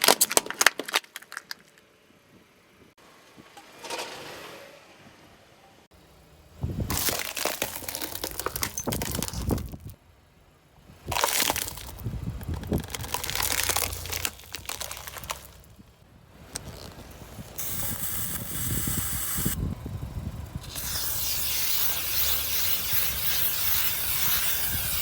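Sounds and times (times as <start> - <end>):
low rumble: 6.0 - 20.7
tyres crunching objects: 6.6 - 10.0, 11.0 - 17.6.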